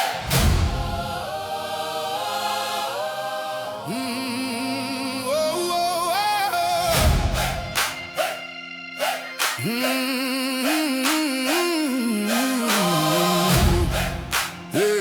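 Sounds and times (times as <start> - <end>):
wordless choir-like voices: 0.0 - 15.0
deep booming hit: 0.2 - 1.1.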